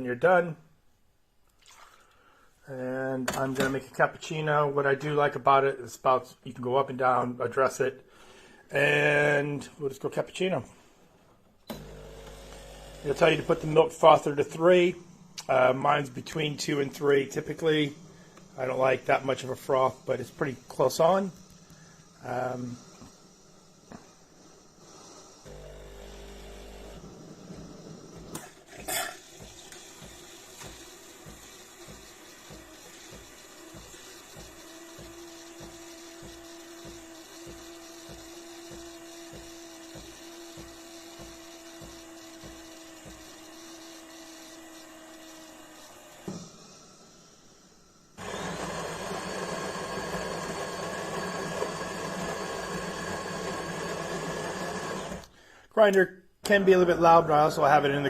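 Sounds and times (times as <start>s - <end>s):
espresso machine pump humming: 11.7s - 14.2s, 16.4s - 47.4s, 48.2s - 55.3s
coffee grinder grinding beans: 11.8s - 14.2s, 16.4s - 46.2s, 48.2s - 55.3s.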